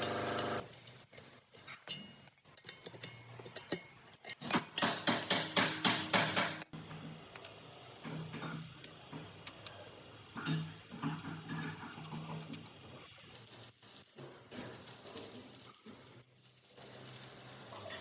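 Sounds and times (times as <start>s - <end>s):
metal tools clinking on metal: 0.0s - 5.8s.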